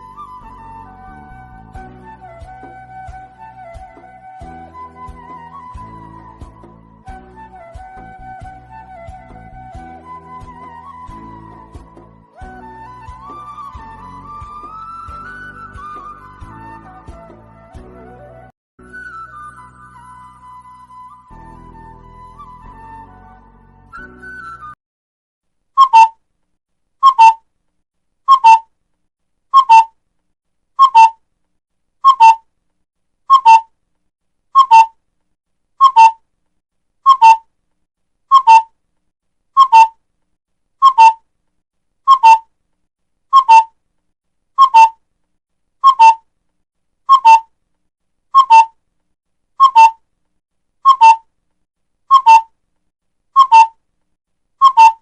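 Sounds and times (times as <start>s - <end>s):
bird call whistled notes: 0.0s - 23.1s, 25.8s - 26.2s, 27.0s - 27.4s, 28.3s - 28.7s, 29.6s - 29.9s, 30.8s - 31.2s, 32.0s - 32.4s, 33.3s - 33.7s, 34.6s - 35.0s, 35.8s - 36.2s, 37.1s - 37.4s, 38.3s - 38.7s, 39.6s - 40.0s, 40.8s - 41.2s, 42.1s - 42.5s, 43.3s - 43.7s, 44.6s - 45.0s, 45.8s - 46.2s, 47.1s - 47.5s, 48.4s - 48.8s, 49.6s - 50.0s, 50.8s - 51.2s, 52.1s - 52.5s, 53.4s - 53.8s, 54.6s - 55.0s
two-note whistled bird call: 25.8s - 26.1s, 27.0s - 27.4s, 28.3s - 28.6s, 30.8s - 31.2s, 32.0s - 32.4s, 33.3s - 33.7s, 34.6s - 34.9s, 35.8s - 36.2s, 37.1s - 37.4s, 38.3s - 38.7s, 39.6s - 39.9s, 40.8s - 41.2s, 42.1s - 42.4s, 43.4s - 43.7s, 44.6s - 45.0s, 45.8s - 46.2s, 47.1s - 47.4s, 48.4s - 48.7s, 49.6s - 50.0s, 50.9s - 51.2s, 52.1s - 52.5s, 53.4s - 53.7s, 54.6s - 55.0s.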